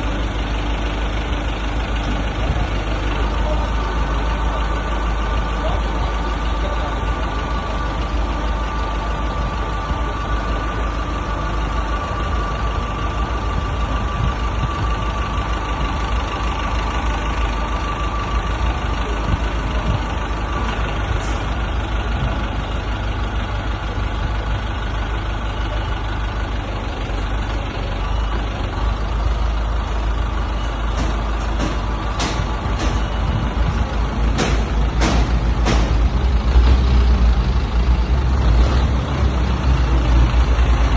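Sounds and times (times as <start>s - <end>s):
diesel engine running: 0.0s - 40.9s
sharp knocks on iron: 31.0s - 33.0s, 34.3s - 36.0s.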